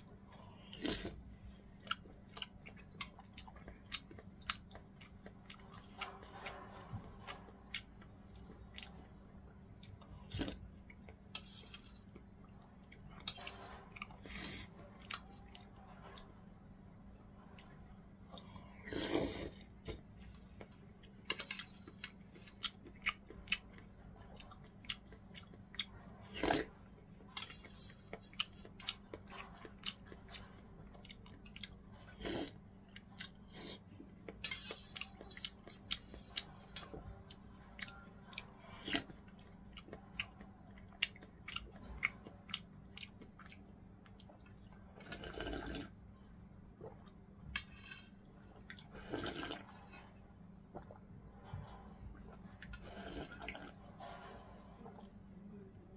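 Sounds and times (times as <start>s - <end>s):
faint steady hum: 0.0s - 55.9s
chewing with wet mouth clicks: 1.8s - 16.2s, 17.6s - 45.9s.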